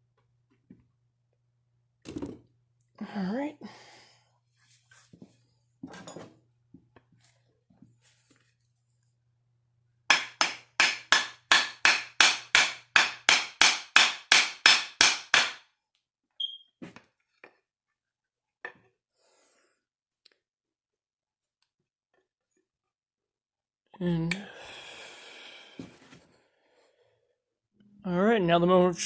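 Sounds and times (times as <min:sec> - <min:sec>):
hammer strikes: 0:10.1 - 0:15.6.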